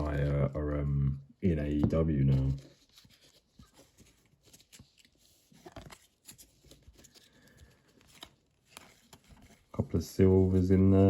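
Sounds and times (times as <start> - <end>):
trading cards clicking and rustling: 1.5 - 9.8.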